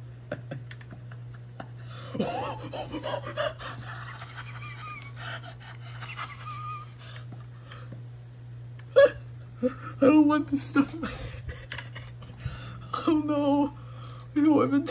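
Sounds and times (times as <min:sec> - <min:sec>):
person wheeze-laughing: 0:01.8 - 0:04.2.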